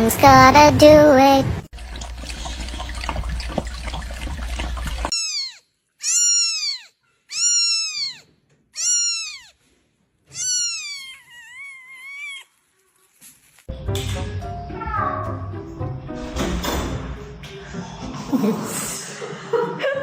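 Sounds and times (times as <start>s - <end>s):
cat meowing: 5.1s - 9.6s, 10.3s - 12.6s.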